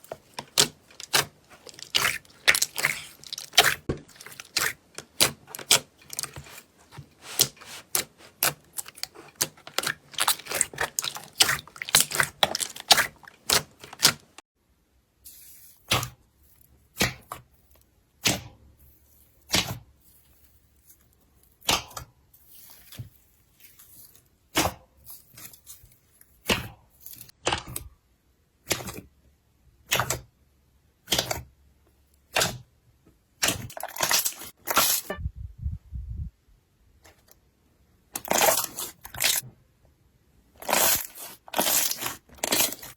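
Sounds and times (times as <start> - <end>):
slime crackling and popping: 0.2 - 6.3, 7.2 - 14.4, 40.6 - 42.9.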